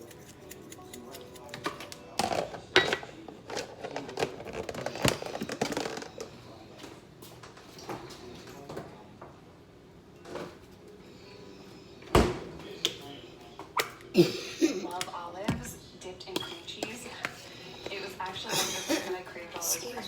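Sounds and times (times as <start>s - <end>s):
kitchen items knocking and clattering: 1.6s - 6.1s.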